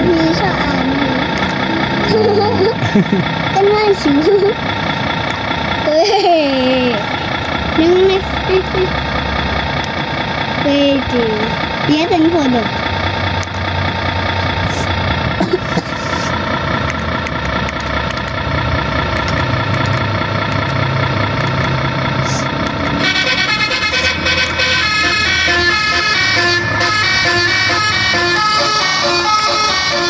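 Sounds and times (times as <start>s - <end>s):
droning horn tone: 23.0s - 30.0s
melodic horn tune: 23.0s - 30.0s.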